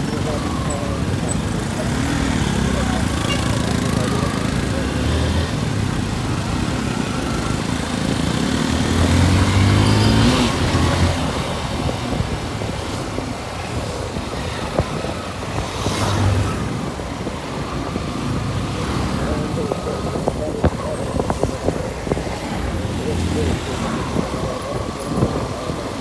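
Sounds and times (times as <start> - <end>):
motorcycle engine: 0.0 - 26.0.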